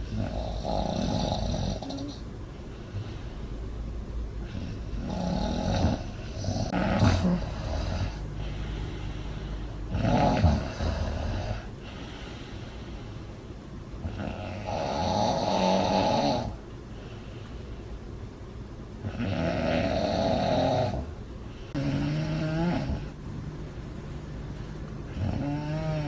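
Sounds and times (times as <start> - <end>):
woman snoring: 0.0 - 2.3, 4.4 - 12.5, 14.0 - 16.6, 19.0 - 21.1, 21.7 - 23.2, 25.1 - 26.0
quiet breathing: 0.0 - 26.0.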